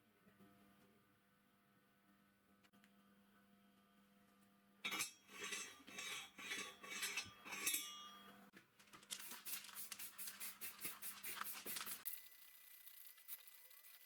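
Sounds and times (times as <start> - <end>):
metal scraping: 4.9 - 8.2.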